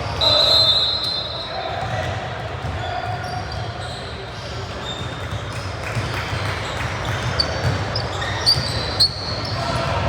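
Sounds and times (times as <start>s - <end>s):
sneaker squeaks: 0.0s - 10.0s
ball bouncing on court: 7.0s - 8.8s.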